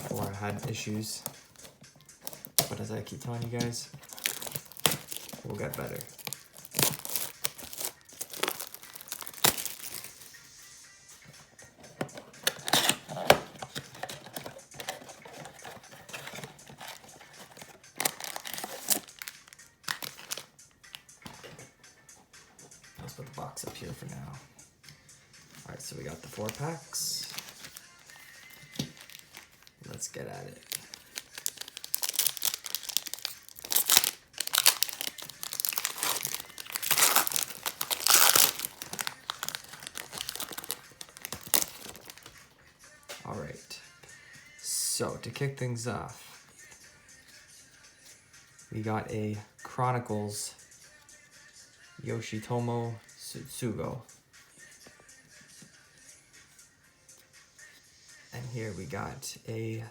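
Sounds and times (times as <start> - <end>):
cardboard and wrappers rustling: 0.0 - 10.4, 11.7 - 21.8, 25.4 - 42.5
foil pack crinkling and tearing: 4.0 - 10.3, 12.6 - 20.5, 27.1 - 29.8, 30.6 - 42.3.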